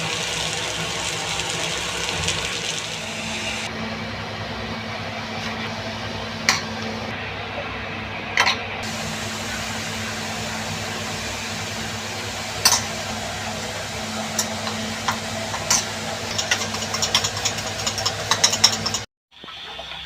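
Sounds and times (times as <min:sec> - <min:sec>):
steady mechanical hum: 0:00.0 - 0:19.1.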